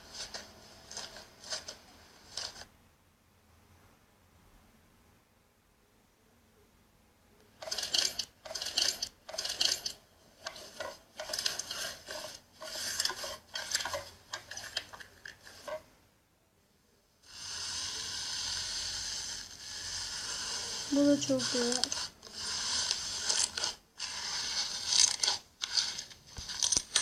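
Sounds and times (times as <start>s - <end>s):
steady hiss: 17.2s - 24.8s.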